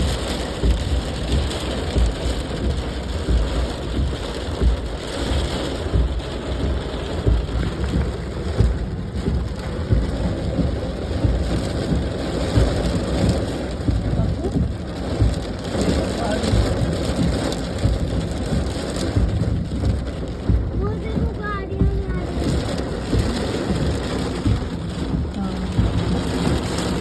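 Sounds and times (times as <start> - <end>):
low rumbling pulses: 0.0 - 27.0
rain falling: 0.0 - 27.0.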